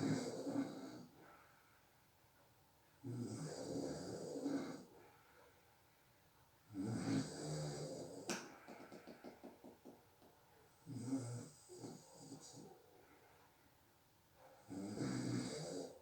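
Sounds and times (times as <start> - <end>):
person snoring: 6.8 - 8.3, 10.9 - 12.6, 14.7 - 16.0.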